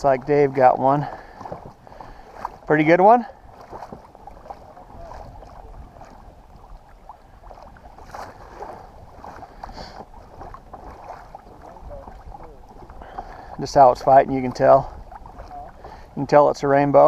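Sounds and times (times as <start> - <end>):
small waves lapping against hull: 0.0 - 17.0
wind rumble on microphone: 0.0 - 17.0.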